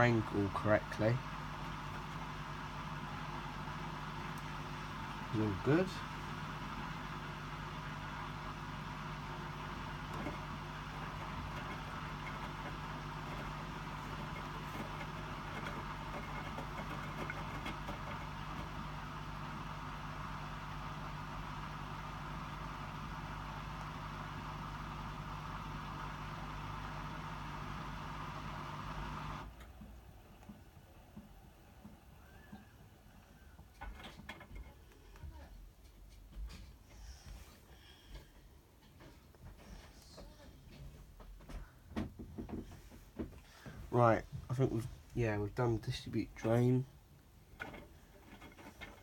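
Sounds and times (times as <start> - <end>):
drain pump humming: 0.0 - 34.6.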